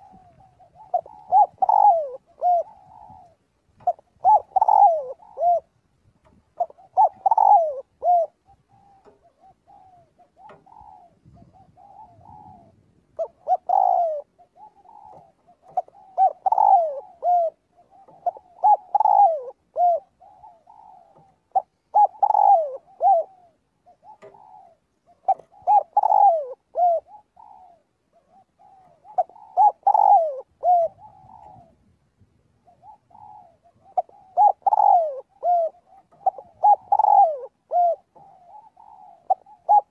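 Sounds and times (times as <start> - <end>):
dove cooing: 0.0 - 31.9, 32.5 - 39.9.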